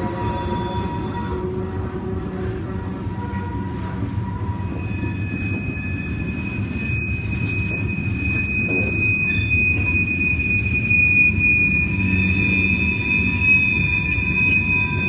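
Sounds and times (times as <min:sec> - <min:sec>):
high-pitched wheel squeal: 0:00.0 - 0:01.4, 0:04.6 - 0:15.0
train rumbling by: 0:00.0 - 0:15.0.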